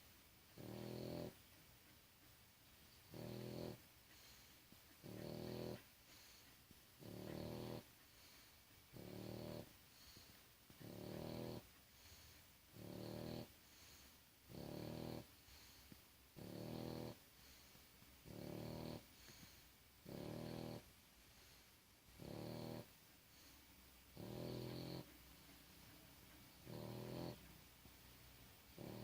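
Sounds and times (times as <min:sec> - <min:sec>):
quiet breathing: 0:00.0 - 0:29.0
person snoring: 0:00.6 - 0:01.4, 0:03.1 - 0:04.4, 0:05.0 - 0:05.8, 0:07.0 - 0:07.9, 0:09.0 - 0:10.2, 0:10.8 - 0:15.8, 0:16.4 - 0:17.2, 0:18.2 - 0:20.8, 0:22.2 - 0:23.5, 0:24.2 - 0:25.1, 0:26.6 - 0:27.4, 0:28.8 - 0:29.0.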